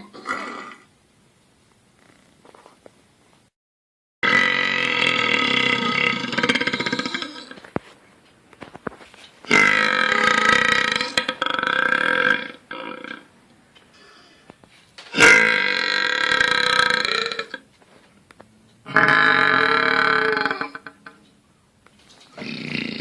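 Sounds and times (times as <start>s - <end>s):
man belching: 0.0s - 0.8s, 4.2s - 7.6s, 9.5s - 13.3s, 15.1s - 17.7s, 18.9s - 21.2s, 22.4s - 23.0s.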